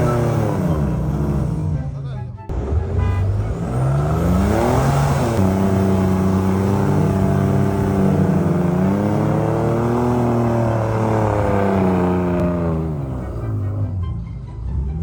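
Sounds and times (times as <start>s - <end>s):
engine running under changing load: 0.0s - 15.0s.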